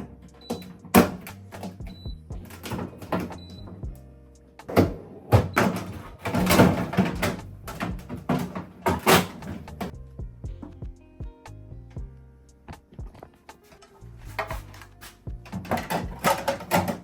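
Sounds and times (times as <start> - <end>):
knocks and clattering of fridge contents: 0.0 - 4.0, 4.7 - 9.9, 14.3 - 17.0
background music: 0.0 - 17.0.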